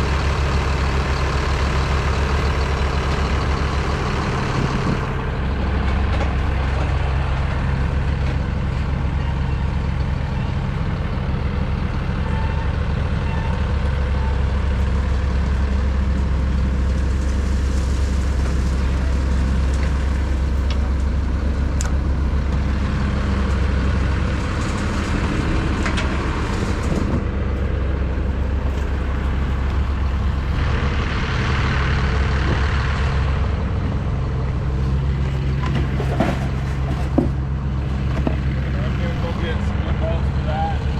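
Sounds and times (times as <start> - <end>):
tractor engine humming: 0.0 - 40.9.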